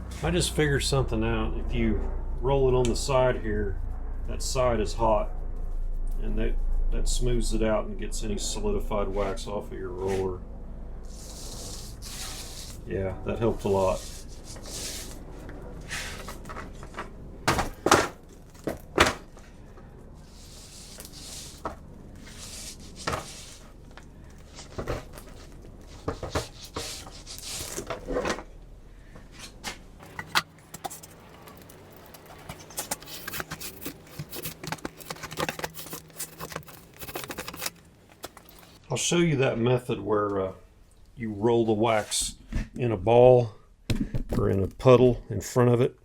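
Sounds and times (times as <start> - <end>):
roller swishing over wax: 11.0 - 16.8, 20.2 - 28.2
knocks and clicks of handling: 29.7 - 38.7.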